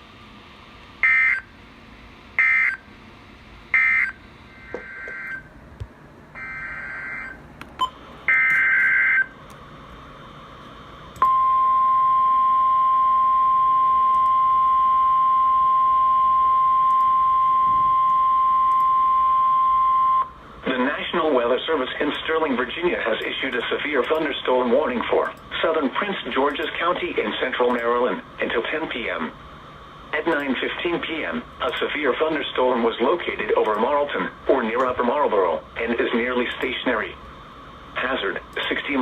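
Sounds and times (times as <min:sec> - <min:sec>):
steady warning alarm tone: 0:01.0 - 0:01.6, 0:02.3 - 0:03.0, 0:03.7 - 0:05.5, 0:06.3 - 0:09.4, 0:11.2 - 0:20.4.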